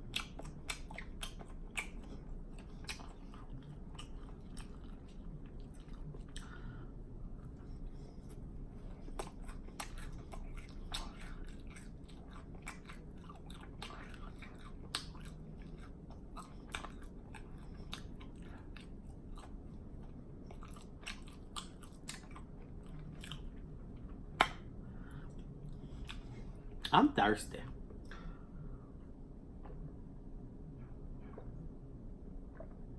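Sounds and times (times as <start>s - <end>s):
open-mouth chewing with lip smacking: 0.0s - 24.6s, 25.2s - 26.9s.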